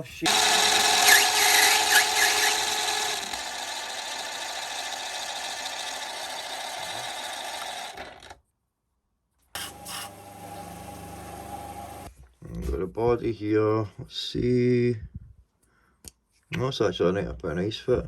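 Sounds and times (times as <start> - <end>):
mini lathe motor whine: 0.3 - 8.4, 9.6 - 12.1.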